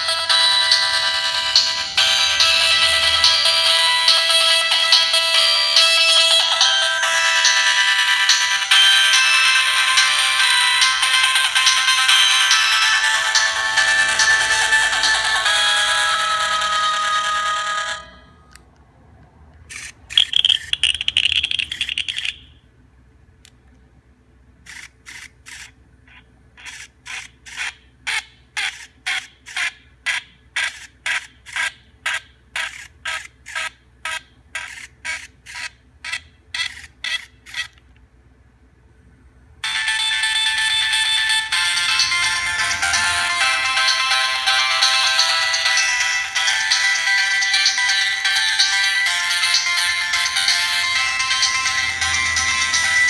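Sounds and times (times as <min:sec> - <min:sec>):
mobile phone ringtone: 0:00.0 - 0:18.6, 0:20.1 - 0:22.5, 0:39.6 - 0:53.0
brief high tone: 0:00.8 - 0:03.8.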